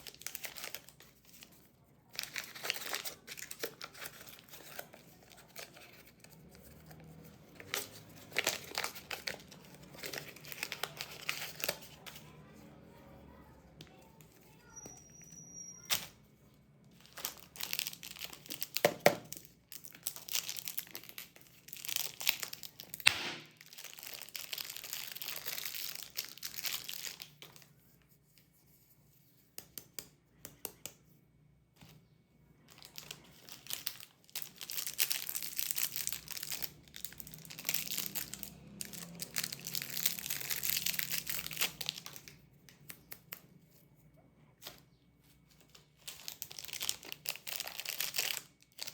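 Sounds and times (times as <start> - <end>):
candy wrappers crinkling and tearing: 0.0 - 12.4, 16.8 - 27.7, 32.6 - 43.6, 44.6 - 48.9.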